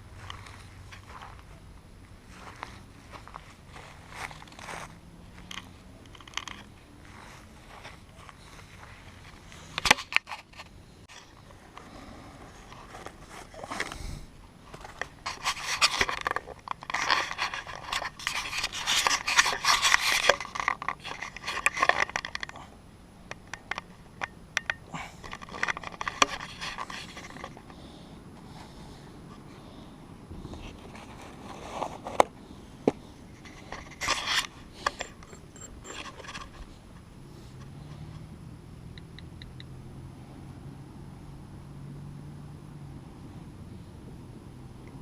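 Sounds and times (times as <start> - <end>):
scraping and rubbing of objects: 2.3 - 22.7, 24.9 - 29.6, 30.4 - 38.2
sharp clicks: 38.9 - 39.7.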